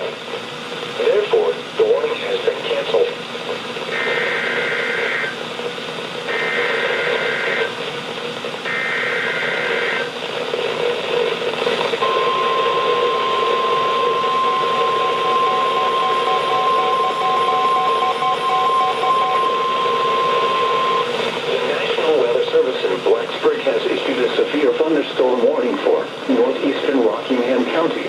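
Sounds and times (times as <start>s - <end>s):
radio reception hiss: 0.0s - 28.0s
steady warning alert tone: 12.0s - 22.2s
warbling data tones: 12.0s - 22.4s.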